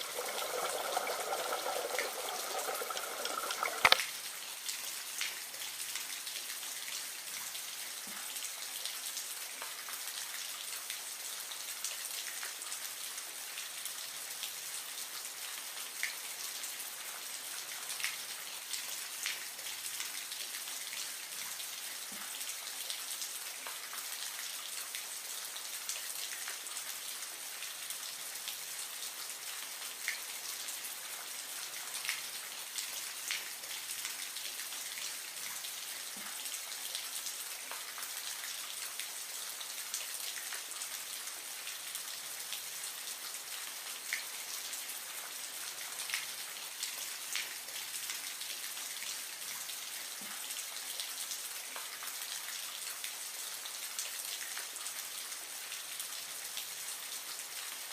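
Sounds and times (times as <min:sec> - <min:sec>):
drip-like ticks: 0:00.0 - 0:04.0
hiss of splashing water: 0:00.0 - 0:04.0.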